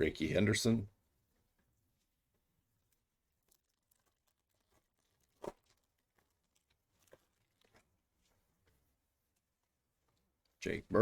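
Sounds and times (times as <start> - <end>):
trading cards and wrappers rustling: 2.8 - 8.8.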